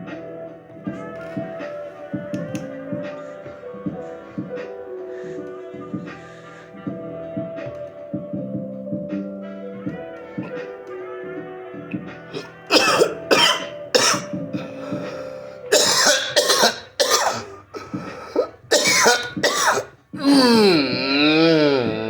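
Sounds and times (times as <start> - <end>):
background music with singing: 0.0 - 22.0
person coughing harshly: 12.4 - 21.0.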